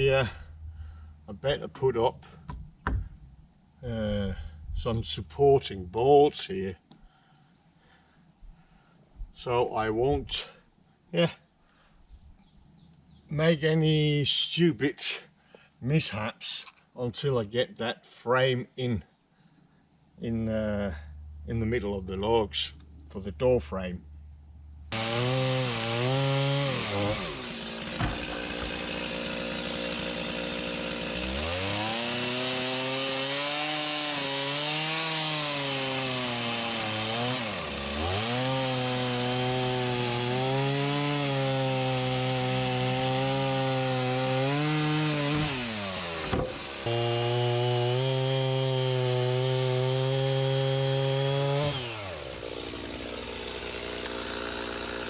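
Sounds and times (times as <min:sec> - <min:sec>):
chainsaw cutting logs: 0:24.9 - 0:55.0.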